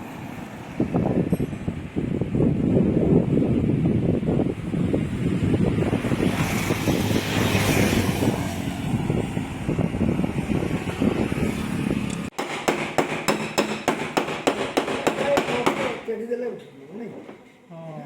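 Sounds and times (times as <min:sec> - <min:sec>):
hammer tapping sheet metal: 0:12.3 - 0:16.0.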